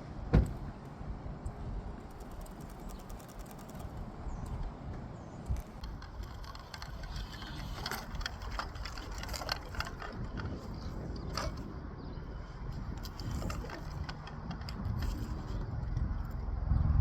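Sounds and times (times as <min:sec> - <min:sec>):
steady low rumble: 0:03.9 - 0:17.0.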